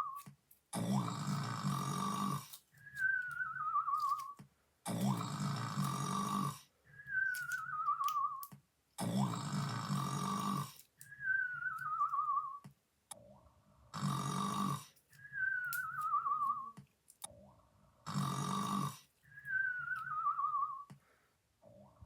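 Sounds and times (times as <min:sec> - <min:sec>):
cartoon rasping snore: 0:00.8 - 0:02.5, 0:04.9 - 0:06.7, 0:09.0 - 0:10.8, 0:13.9 - 0:15.0, 0:18.0 - 0:19.1.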